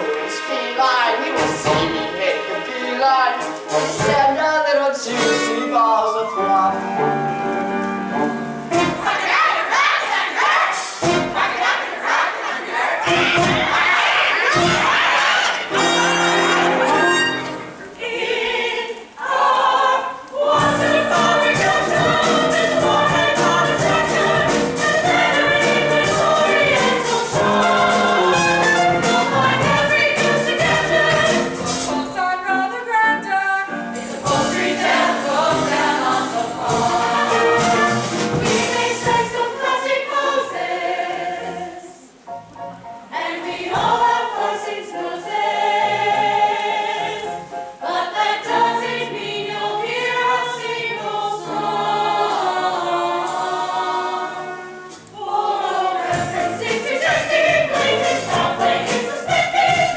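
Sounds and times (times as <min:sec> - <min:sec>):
instrumental accompaniment: 0:00.0 - 0:09.3, 0:13.1 - 0:18.2, 0:20.4 - 0:32.4, 0:33.2 - 0:39.8, 0:51.4 - 0:59.9
chorus singing: 0:00.0 - 0:59.9.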